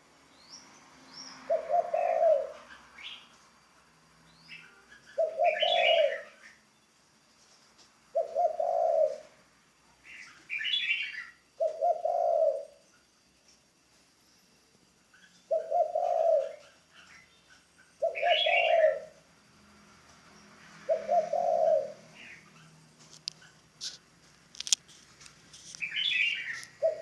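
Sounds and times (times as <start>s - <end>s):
dove cooing: 1.5s - 3.2s, 4.6s - 6.6s, 8.1s - 9.4s, 10.2s - 12.8s, 15.5s - 17.3s, 18.0s - 19.2s, 20.8s - 22.8s, 25.8s - 27.0s
higher bird chirps: 4.2s - 6.9s, 15.0s - 19.3s, 20.3s - 23.6s, 25.8s - 27.0s.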